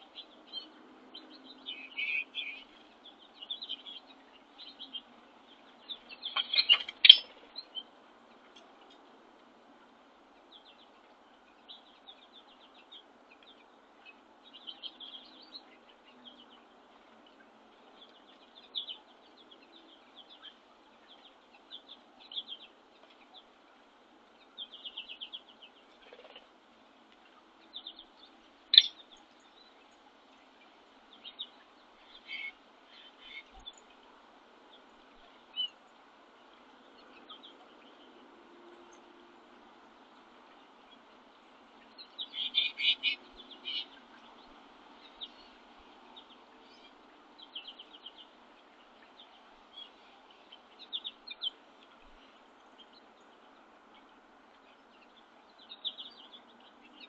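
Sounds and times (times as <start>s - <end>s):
songbirds chirping: 0.0s - 57.0s.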